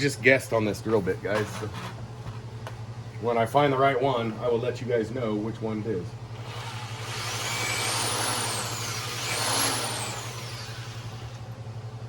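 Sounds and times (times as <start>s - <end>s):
power drill motor whine: 6.3s - 11.7s.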